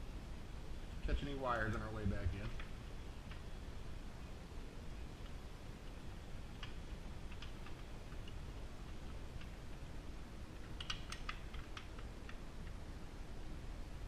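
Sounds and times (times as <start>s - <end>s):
parts clicking and tapping: 5.2s - 9.9s, 10.6s - 12.8s.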